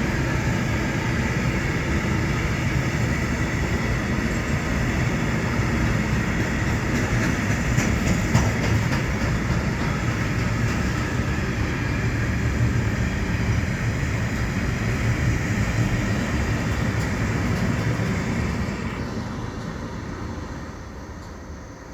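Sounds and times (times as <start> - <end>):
freight train rumbling and rattling: 0.0 - 21.9
wheels clicking over rail joints: 2.1 - 19.0.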